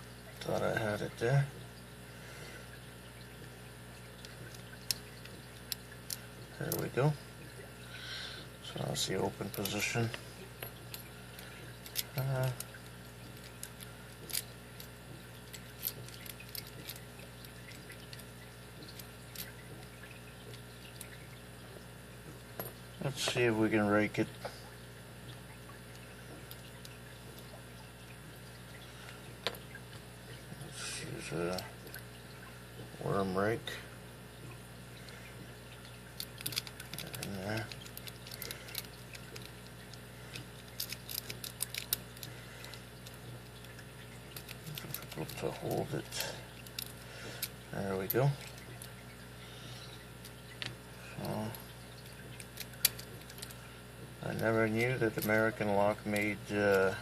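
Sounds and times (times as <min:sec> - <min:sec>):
lock-picking metallic clicks: 0:35.8 - 0:42.3, 0:52.1 - 0:53.6.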